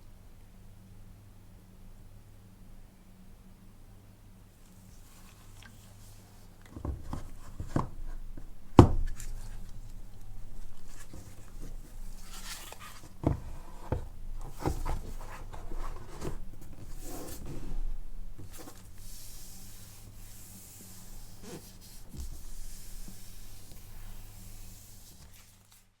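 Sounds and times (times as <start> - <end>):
low electrical hum: 0.0 - 26.0
hands rubbing packaging: 5.0 - 26.0
light taps and knocks: 6.6 - 12.2.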